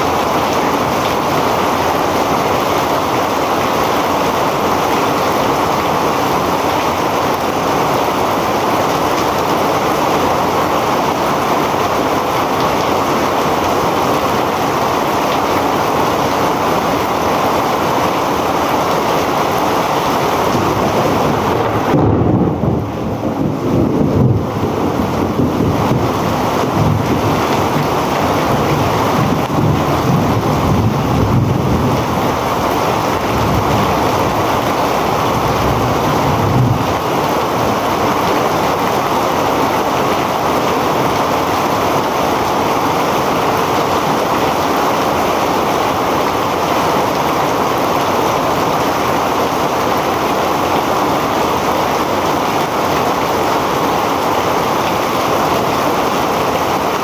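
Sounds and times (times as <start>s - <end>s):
heavy rain falling: 0.0s - 57.0s
low rumble: 20.5s - 37.1s.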